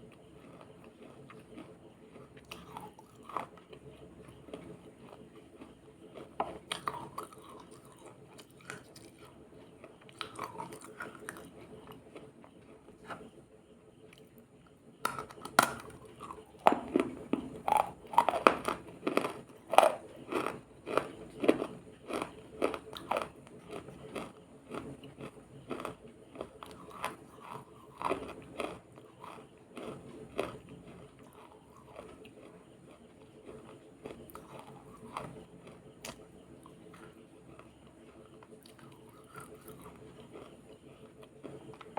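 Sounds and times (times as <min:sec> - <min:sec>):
crunching while chewing: 0:00.0 - 0:41.9.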